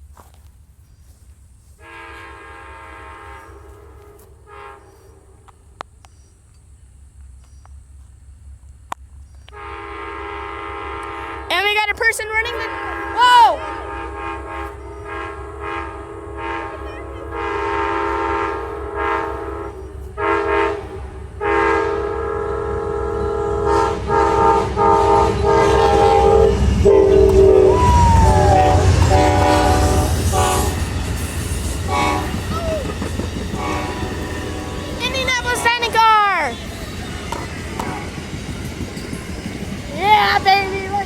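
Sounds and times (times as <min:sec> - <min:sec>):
train rumbling on rails: 0:00.0 - 0:41.0
train air horn blasts: 0:01.7 - 0:05.8, 0:09.5 - 0:38.4.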